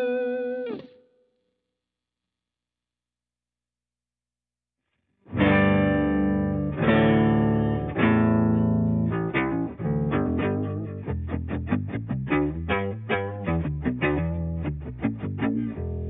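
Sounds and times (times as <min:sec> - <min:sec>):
electric guitar chords and notes: 0:00.0 - 0:01.0, 0:05.3 - 0:16.0.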